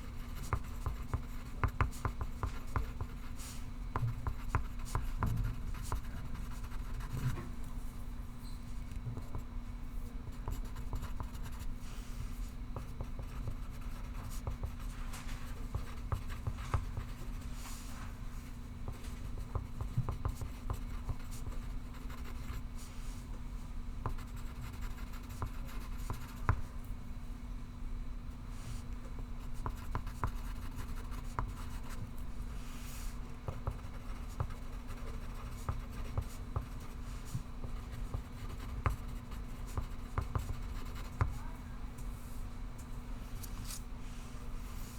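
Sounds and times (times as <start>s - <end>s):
pencil scratching on paper: 0.0s - 3.6s, 4.2s - 7.1s, 10.4s - 11.7s, 12.8s - 17.5s, 19.3s - 22.6s, 24.1s - 26.3s, 33.5s - 41.4s
steady low hum: 0.0s - 44.9s.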